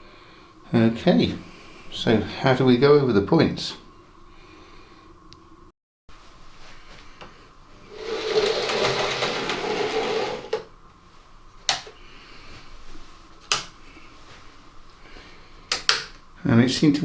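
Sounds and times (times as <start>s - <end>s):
model train motor whirring: 7.9s - 10.7s
sharp clicks: 15.7s - 16.2s.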